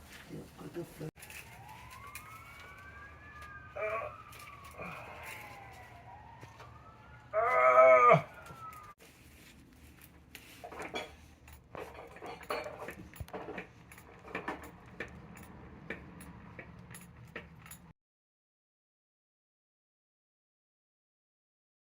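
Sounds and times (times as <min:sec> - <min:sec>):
emergency siren wailing: 0:01.2 - 0:09.0
light clinks and clatters: 0:04.2 - 0:05.8, 0:09.7 - 0:17.9.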